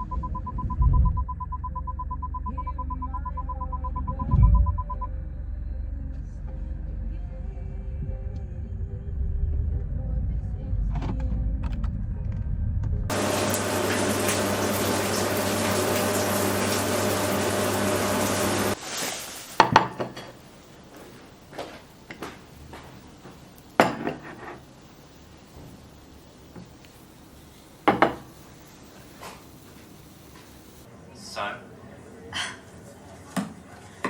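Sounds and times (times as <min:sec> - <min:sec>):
steady running hum: 0:00.0 - 0:18.8.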